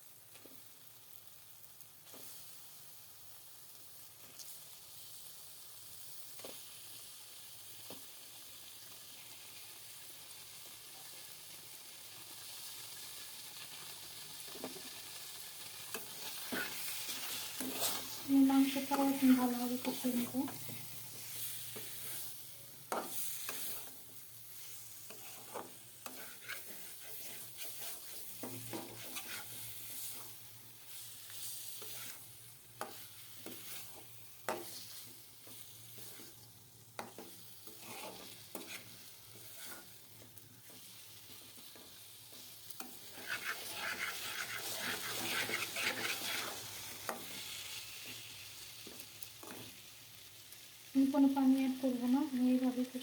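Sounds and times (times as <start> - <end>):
steady sizzle: 0.0 - 53.0
spatula scraping and knocking pan: 15.8 - 22.3, 22.9 - 24.0, 24.6 - 36.4, 37.0 - 49.8.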